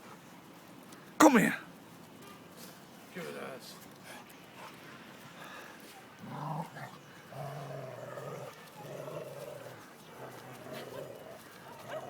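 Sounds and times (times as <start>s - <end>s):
dog growling low: 6.2s - 12.0s.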